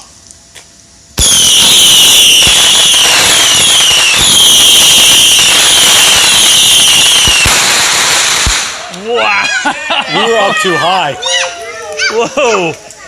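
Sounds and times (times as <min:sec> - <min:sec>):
sharp firework pops: 0:00.5 - 0:09.0
falling firework whistles: 0:01.2 - 0:09.0
firework hissing: 0:01.2 - 0:10.8.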